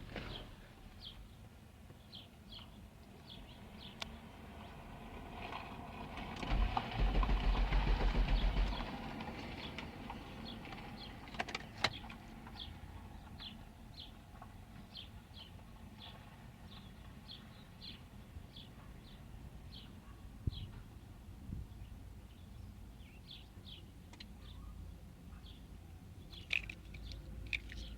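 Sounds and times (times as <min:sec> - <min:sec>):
bird chirping: 0:21.8 - 0:27.9.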